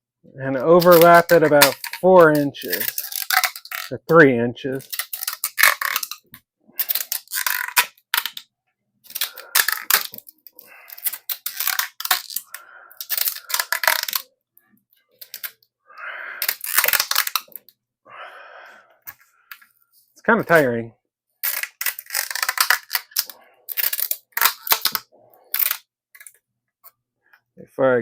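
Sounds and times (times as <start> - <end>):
tape crackling and clicking: 0.6 - 15.7, 16.4 - 17.8, 21.4 - 27.4.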